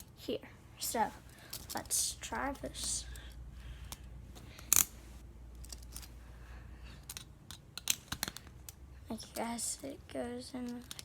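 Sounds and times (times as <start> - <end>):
handcuffs clinking: 3.2 - 6.1, 7.0 - 8.8.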